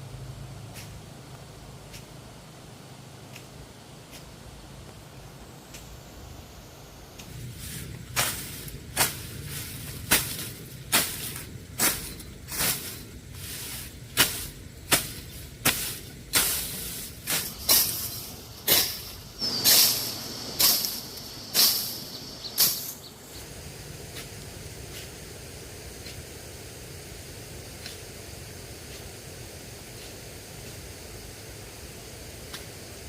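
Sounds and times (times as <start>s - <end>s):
rhythmic scraping strokes: 7.2s - 23.4s.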